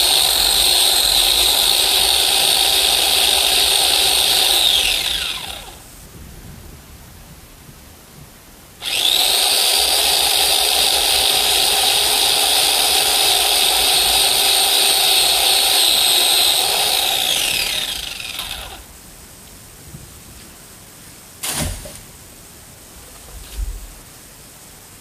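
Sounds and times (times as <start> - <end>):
electric chainsaw cutting wood: 0.0 - 5.8, 8.8 - 18.9.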